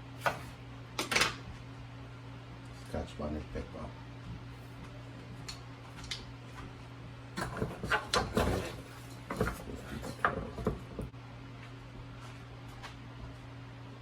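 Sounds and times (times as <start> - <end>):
steady low hum: 0.0 - 14.0
kitchen items knocking and clattering: 7.4 - 11.1.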